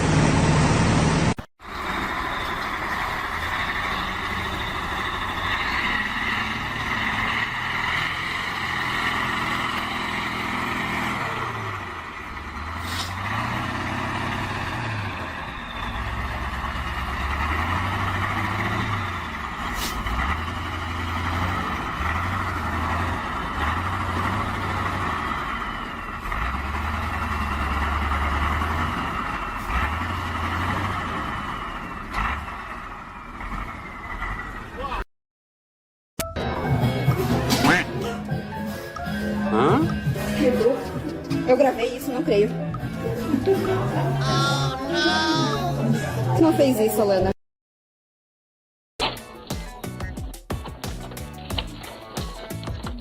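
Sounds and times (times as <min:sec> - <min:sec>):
vehicle engine running: 0:00.0 - 0:34.9.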